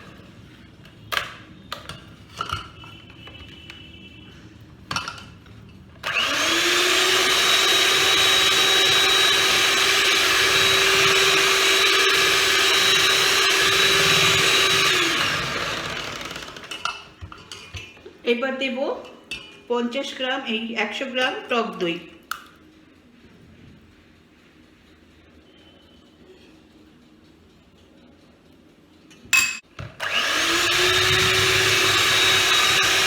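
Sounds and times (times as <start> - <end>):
electric kitchen mixer whirring: 6.0 - 17.0, 29.9 - 33.0.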